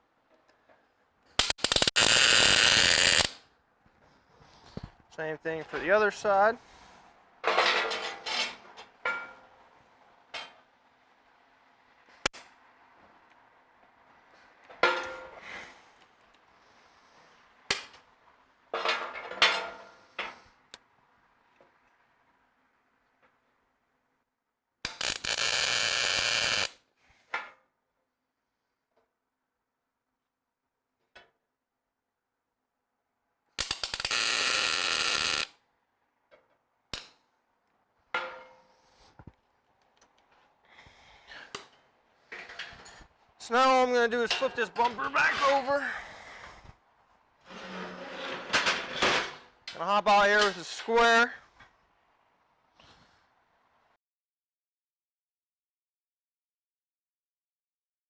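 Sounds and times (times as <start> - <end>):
electric arc crackle: 1.4 - 3.4, 24.9 - 26.7, 33.6 - 35.5
sharp metallic clicks: 1.4 - 3.4, 33.6 - 34.2
steel parts clanking: 7.4 - 9.4, 43.7 - 45.6.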